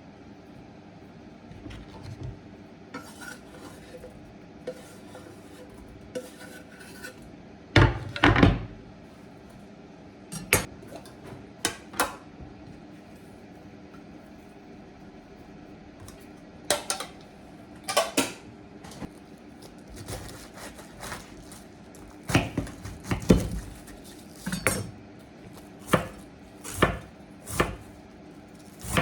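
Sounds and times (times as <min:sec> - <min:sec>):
dishes and utensils clinking: 0:10.3 - 0:11.2.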